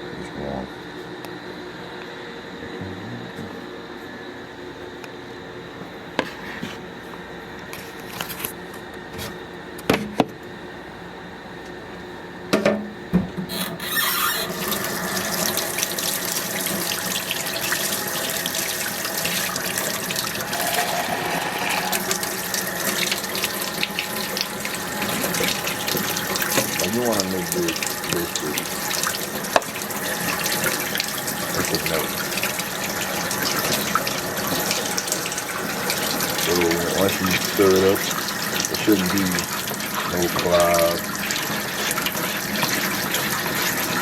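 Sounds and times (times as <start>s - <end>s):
water running from tap: 13.5s - 44.0s.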